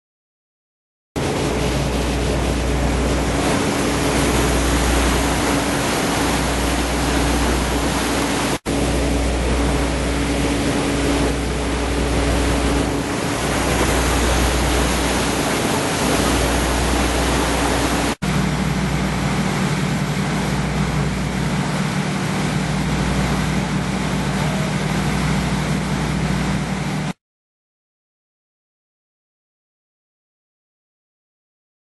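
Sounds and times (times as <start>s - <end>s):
low engine hum: 1.2s - 27.2s
water rushing: 1.2s - 27.2s.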